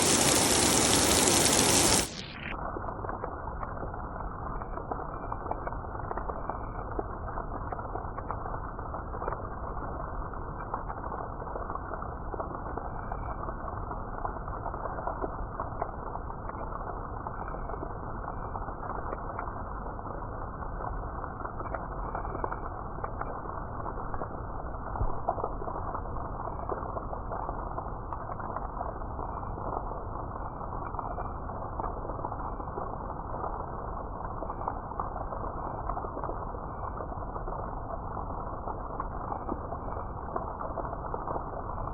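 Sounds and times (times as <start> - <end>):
rain falling on leaves: 0.0 - 41.9.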